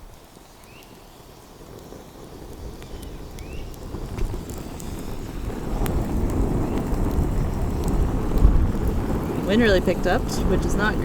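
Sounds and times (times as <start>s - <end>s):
wind buffeting microphone: 1.2s - 11.0s.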